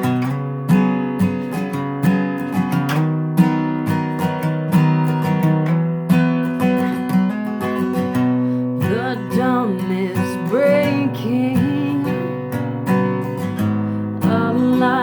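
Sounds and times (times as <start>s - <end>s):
acoustic guitar strumming: 0.0s - 15.0s
person singing: 8.8s - 12.5s, 14.2s - 15.0s.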